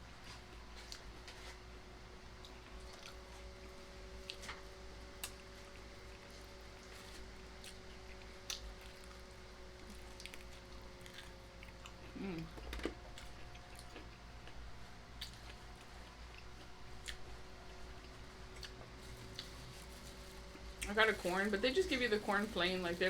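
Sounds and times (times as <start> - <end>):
chewing fried chicken: 0.0 - 23.0
brief voice hum: 12.2 - 12.5.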